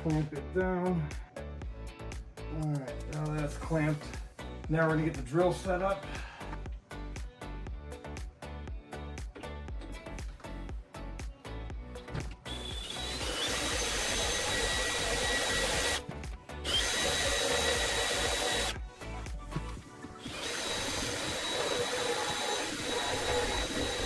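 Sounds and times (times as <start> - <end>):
power drill boring through wood: 12.5 - 24.0.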